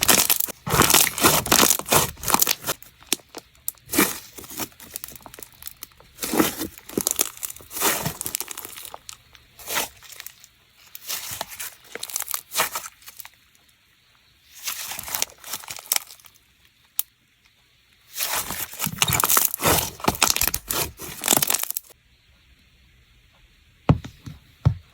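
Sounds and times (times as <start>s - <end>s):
slime squeezed by hand: 0.0s - 10.3s, 18.1s - 21.9s.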